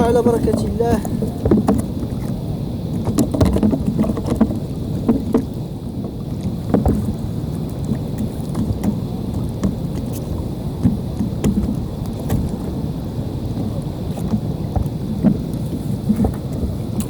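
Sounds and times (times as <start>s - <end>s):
water splashing and lapping: 0.0s - 17.0s
wind rumbling on microphone: 0.0s - 17.0s
small knocks: 3.0s - 5.5s.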